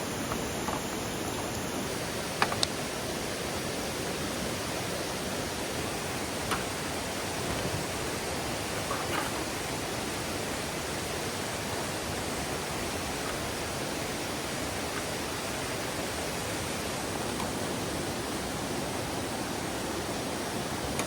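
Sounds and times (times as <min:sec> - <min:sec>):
stream rushing: 0:00.0 - 0:21.0.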